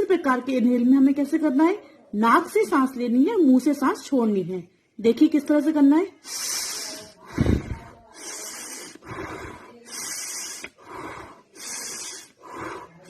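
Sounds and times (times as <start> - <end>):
woman breathing deeply: 6.2 - 13.0.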